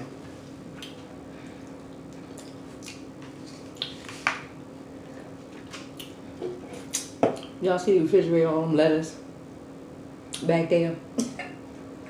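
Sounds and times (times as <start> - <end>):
person chewing with mouth smacks: 0.7 - 4.3.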